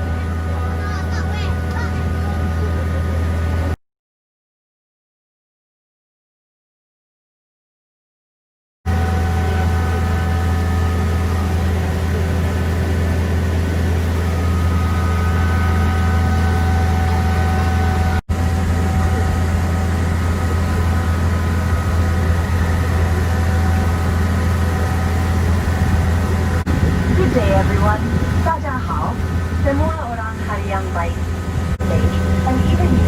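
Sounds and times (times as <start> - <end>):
vehicle engine droning: 0.0 - 3.8, 8.9 - 33.0
whining tones: 8.9 - 33.0.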